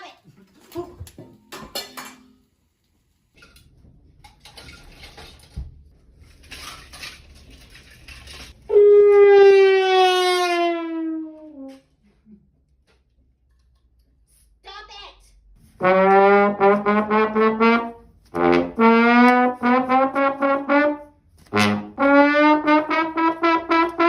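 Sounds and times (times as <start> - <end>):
dishes clattering: 0.4 - 2.4
comedic sliding brass tone: 8.7 - 11.8, 15.8 - 24.0.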